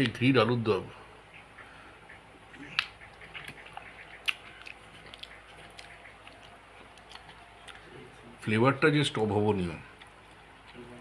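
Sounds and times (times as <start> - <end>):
chewing and mouth sounds: 1.6 - 8.0, 9.9 - 11.0.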